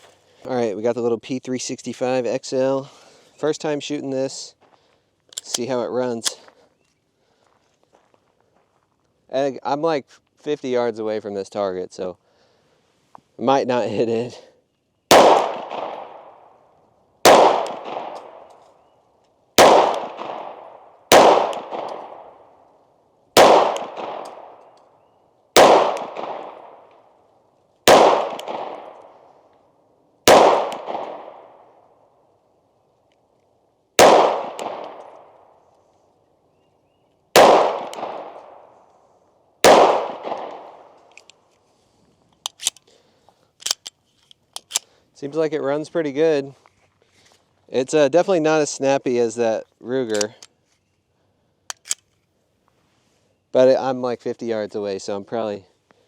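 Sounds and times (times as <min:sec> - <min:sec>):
pistol shots echoing: 0:15.1 - 0:16.5, 0:17.2 - 0:18.5, 0:19.6 - 0:22.4, 0:23.4 - 0:24.7, 0:25.6 - 0:27.0, 0:27.8 - 0:29.2, 0:30.2 - 0:31.7, 0:34.0 - 0:35.4, 0:37.3 - 0:38.7, 0:39.6 - 0:41.0.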